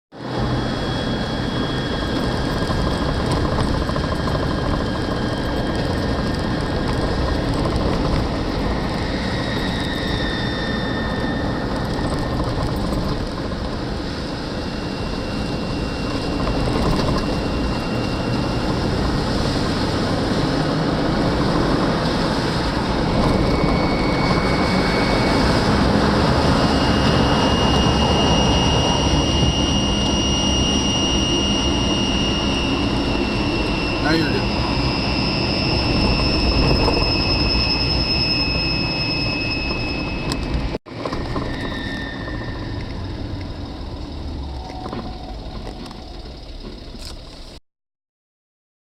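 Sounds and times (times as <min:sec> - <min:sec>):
vehicle noise: 0:00.1 - 0:47.6
high-pitched whistle: 0:08.6 - 0:12.4, 0:14.4 - 0:19.3, 0:22.8 - 0:40.8, 0:41.4 - 0:46.2.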